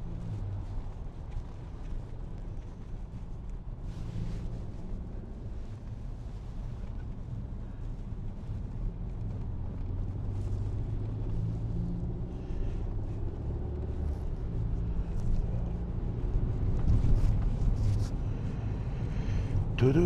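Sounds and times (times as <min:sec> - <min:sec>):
car engine and tyres rumbling: 0:00.0 - 0:20.0.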